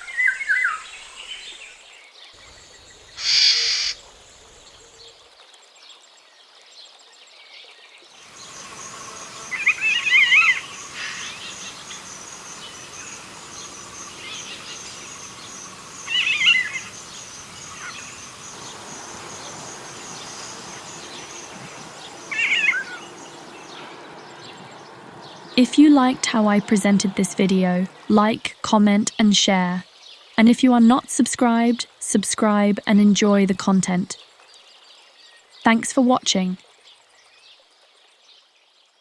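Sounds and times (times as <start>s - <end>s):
high insect-like hiss: 0.9s - 5.1s, 8.2s - 25.3s
bird harsh call: 3.0s - 4.6s, 8.3s - 24.6s
bird warbling whistles: 3.2s - 4.0s, 9.5s - 12.0s, 16.0s - 17.0s, 22.3s - 23.2s.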